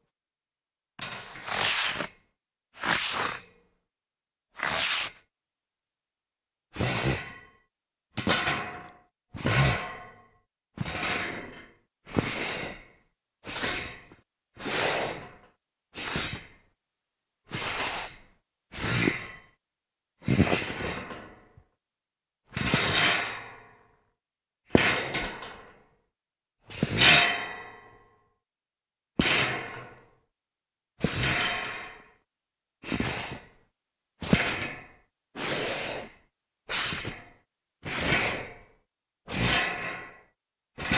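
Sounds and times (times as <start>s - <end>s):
gritty scrape on metal grate: 1.0s - 2.1s, 2.8s - 3.4s, 4.6s - 5.2s.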